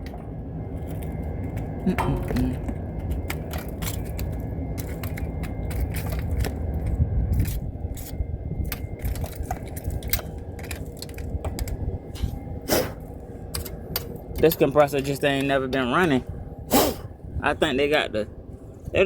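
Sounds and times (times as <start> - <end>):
faint steady hum: 0.0 - 19.0
steady low rumble: 0.0 - 19.0
tools clicking and scraping metal: 3.2 - 6.6, 7.3 - 12.4, 13.5 - 15.5.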